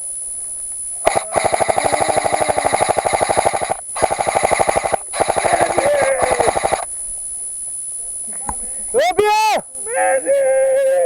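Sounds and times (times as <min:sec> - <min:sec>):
airsoft gun firing full-auto: 0:01.0 - 0:06.9.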